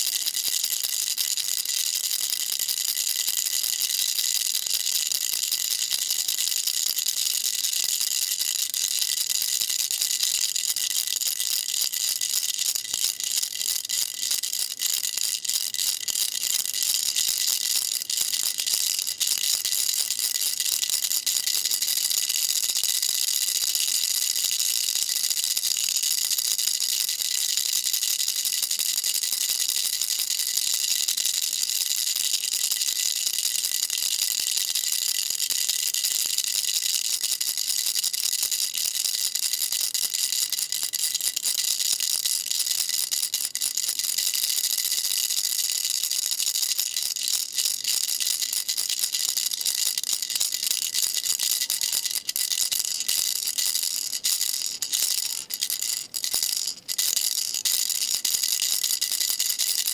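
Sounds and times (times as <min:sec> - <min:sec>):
baby rattle shaking: 0:00.0 - 0:59.9.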